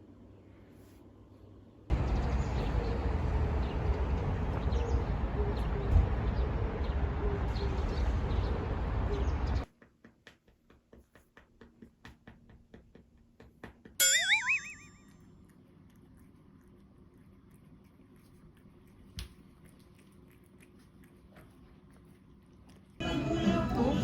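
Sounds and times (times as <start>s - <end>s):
cartoon boing sound effect: 14.0s - 15.0s.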